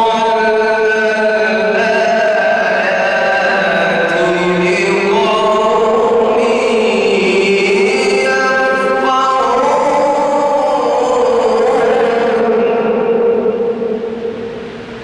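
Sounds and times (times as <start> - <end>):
man reciting melodically: 0.0 - 14.3.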